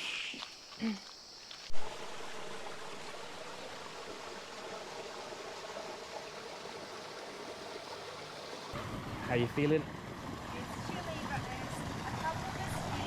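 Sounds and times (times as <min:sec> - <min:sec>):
high insect buzz: 0:00.0 - 0:02.1.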